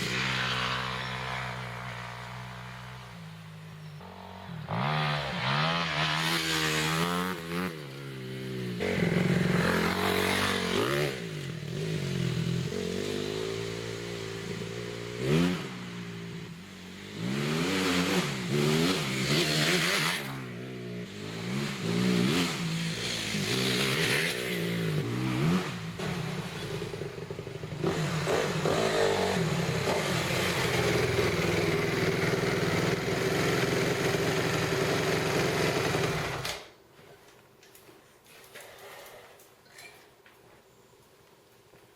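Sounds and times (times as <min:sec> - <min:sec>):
dirt bike engine revving: 0:04.0 - 0:36.5.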